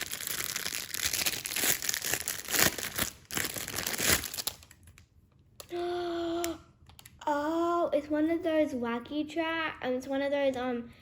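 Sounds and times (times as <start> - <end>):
packaging crinkling: 0.0 - 5.1.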